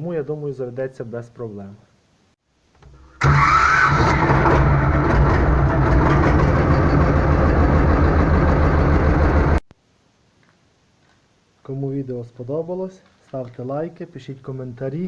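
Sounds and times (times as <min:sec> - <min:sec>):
diesel tractor engine running: 0:03.2 - 0:09.6.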